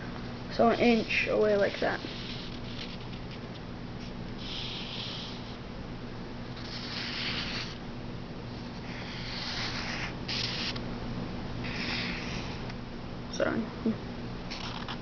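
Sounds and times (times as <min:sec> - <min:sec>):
marker scratching on paper: 0:00.6 - 0:03.3, 0:04.4 - 0:05.6, 0:06.6 - 0:07.8, 0:08.6 - 0:10.8, 0:11.6 - 0:12.6, 0:14.5 - 0:15.0.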